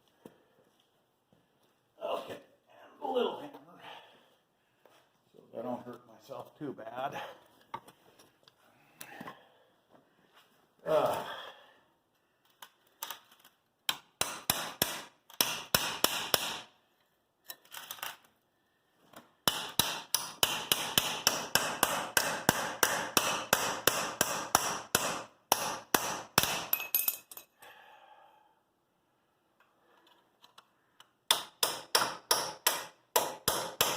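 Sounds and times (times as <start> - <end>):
hammer striking steel chisel: 13.9 - 16.7, 19.4 - 27.3, 31.3 - 33.9.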